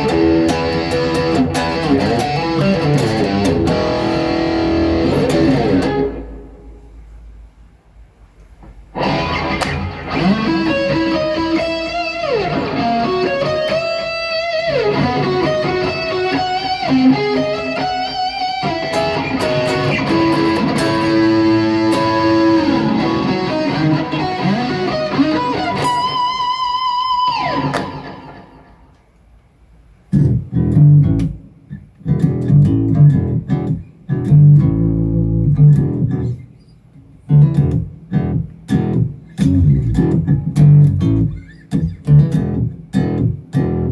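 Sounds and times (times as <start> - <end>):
chugging electric guitar riffs: 0.0 - 6.9, 8.9 - 29.0, 30.1 - 31.5, 32.1 - 36.4, 37.3 - 43.9
electric guitar lead line: 0.0 - 7.0, 8.9 - 29.0.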